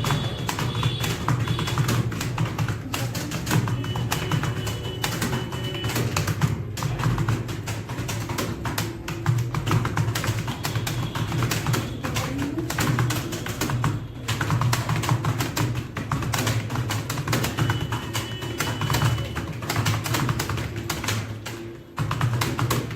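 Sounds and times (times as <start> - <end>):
fast typing on keyboard: 0.0 - 22.9.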